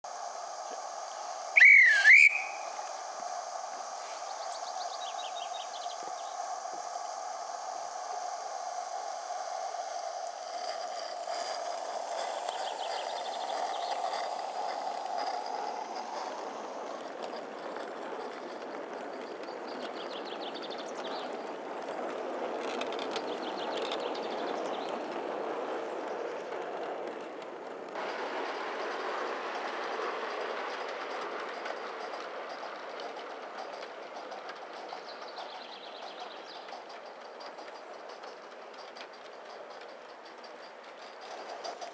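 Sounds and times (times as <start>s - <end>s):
steady steam hiss: 0.0s - 41.9s
steam whistle blasts: 1.5s - 2.8s.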